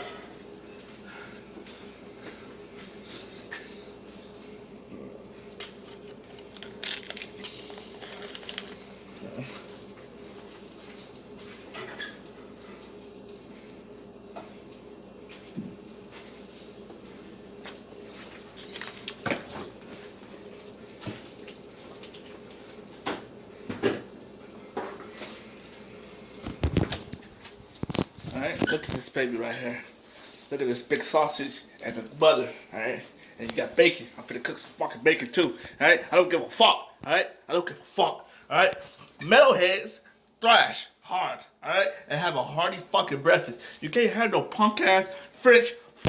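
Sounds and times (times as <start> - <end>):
fat crackling and popping: 5.6 - 9.6, 26.3 - 29.3.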